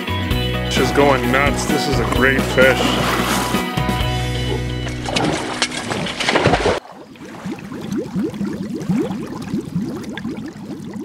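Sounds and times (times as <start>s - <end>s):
music: 0.0s - 6.0s
voice: 0.7s - 3.1s
water gurgling and bubbling: 2.5s - 3.7s, 4.4s - 11.0s.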